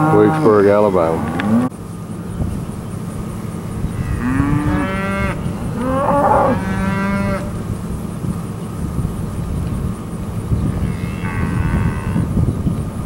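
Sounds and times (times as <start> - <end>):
calves bawling: 3.7 - 7.8.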